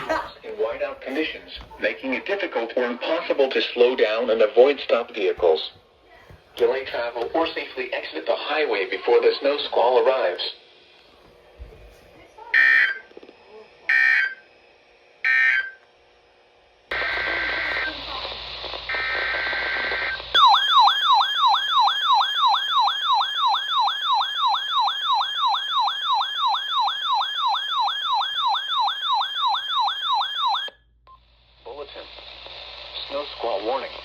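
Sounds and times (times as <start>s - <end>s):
radio hiss: 6.6s - 10.6s, 16.9s - 20.4s, 31.3s - 34.0s
warbling siren-like alert tone: 20.4s - 30.8s.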